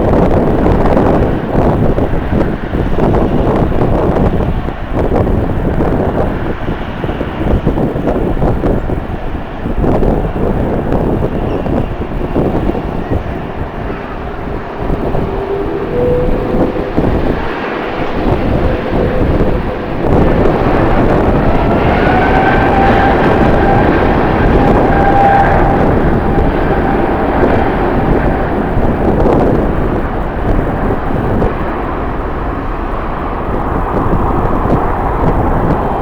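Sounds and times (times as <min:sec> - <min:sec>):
jet engines whining: 0:00.1 - 0:36.0.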